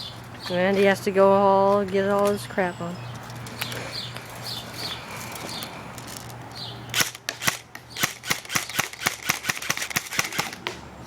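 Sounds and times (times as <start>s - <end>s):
airsoft rifle shots: 6.9s - 10.8s.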